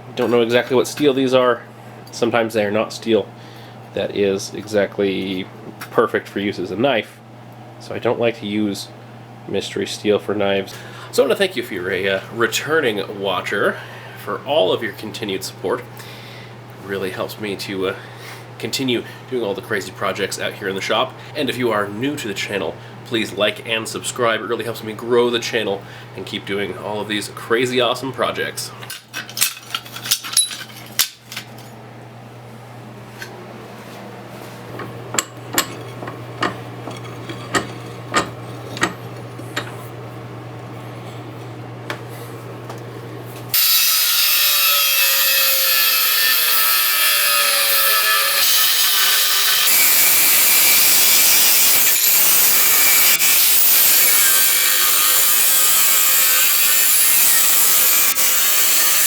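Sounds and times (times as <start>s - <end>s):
steady low hum: 0.0s - 43.6s
metallic clinks and knocks: 29.0s - 31.6s
power tool working steel: 34.8s - 39.8s, 43.5s - 59.0s.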